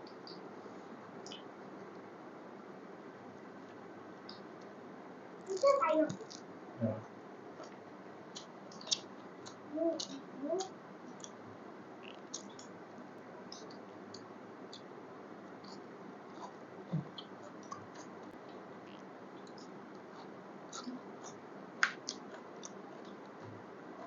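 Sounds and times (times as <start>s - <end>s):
person chewing food: 15.6s - 18.4s, 22.0s - 23.4s.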